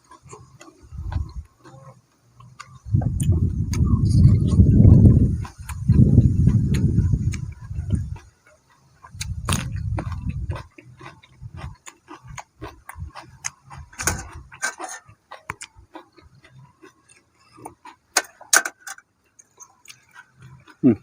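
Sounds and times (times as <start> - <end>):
chewing crunchy food: 0.0 - 21.0
wind rumbling on microphone: 0.3 - 1.5, 2.6 - 8.3, 9.0 - 14.6.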